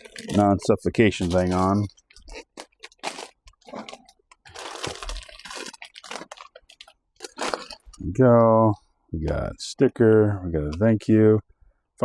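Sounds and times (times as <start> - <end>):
plastic bag crinkling: 0.0 - 8.0.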